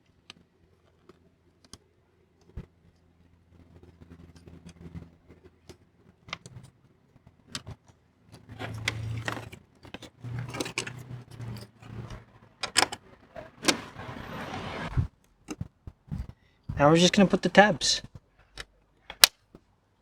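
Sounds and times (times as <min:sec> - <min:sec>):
metal plate and screws clinking: 0:08.5 - 0:13.0.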